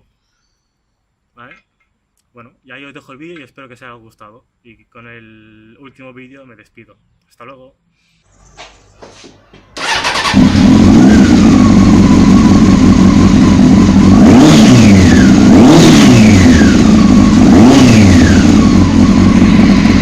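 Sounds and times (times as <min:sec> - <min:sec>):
motorcycle engine revving: 0:09.8 - 0:20.0.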